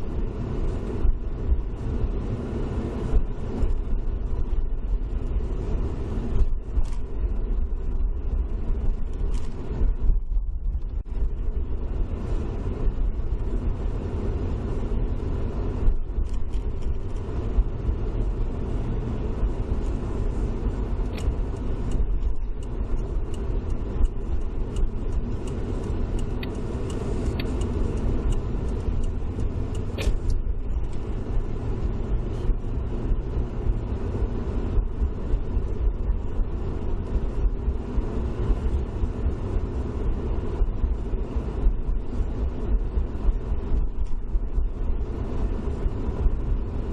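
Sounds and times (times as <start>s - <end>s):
tyres and engine rumble: 0.0s - 46.9s
scattered clicks: 16.2s - 17.3s, 21.0s - 31.1s.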